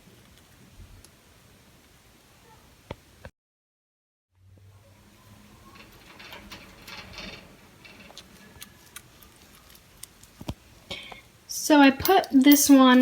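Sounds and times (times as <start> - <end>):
scratchy rustling of bird toys: 5.3 - 10.9.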